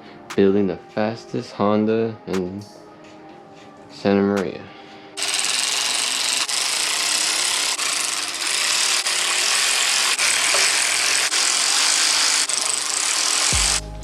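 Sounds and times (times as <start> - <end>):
power ratchet running: 5.2 - 13.8.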